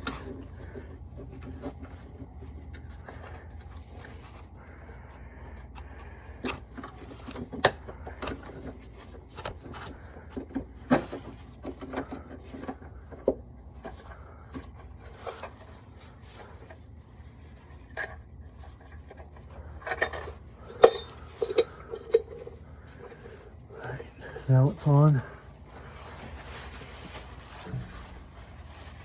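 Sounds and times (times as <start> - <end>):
metallic clicks and clinks: 19.8 - 22.4.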